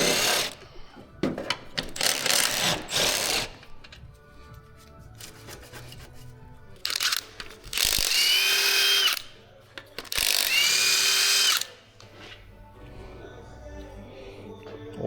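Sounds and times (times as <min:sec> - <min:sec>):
cordless impact wrench whining: 0:06.9 - 0:09.2, 0:10.0 - 0:11.7.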